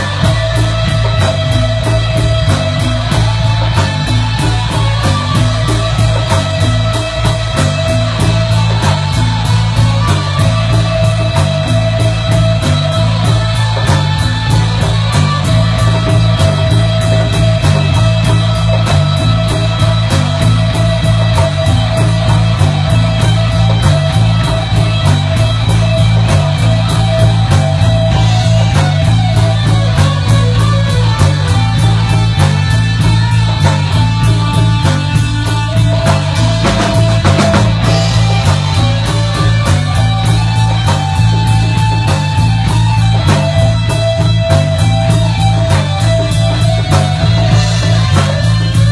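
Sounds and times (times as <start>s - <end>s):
bass: 0.0s - 48.9s
drum kit: 0.0s - 48.9s
guitar: 0.0s - 48.9s.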